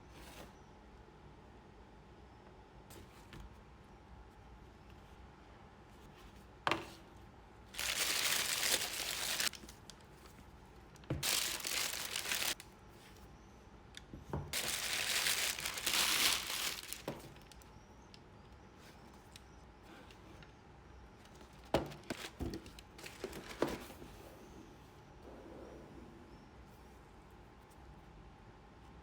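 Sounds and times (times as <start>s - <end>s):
packaging crinkling and rustling: 7.8s - 10.4s, 11.0s - 12.6s, 14.6s - 17.7s, 21.4s - 24.0s.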